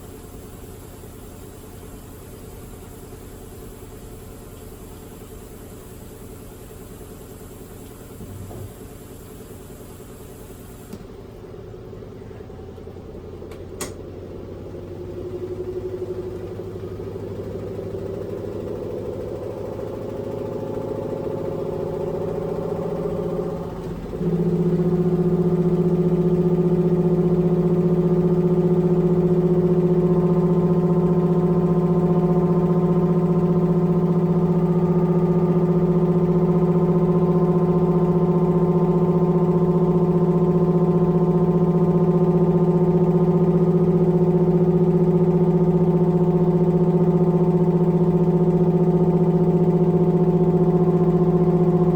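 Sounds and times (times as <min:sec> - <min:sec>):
washing machine droning: 0:00.0 - 0:51.9.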